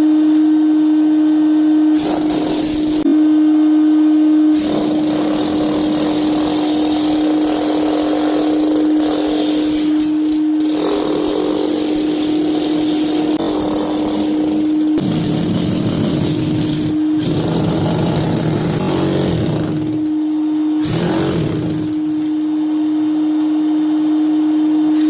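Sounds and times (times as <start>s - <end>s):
power tool cutting wood: 4.6s - 20.0s, 20.8s - 22.0s.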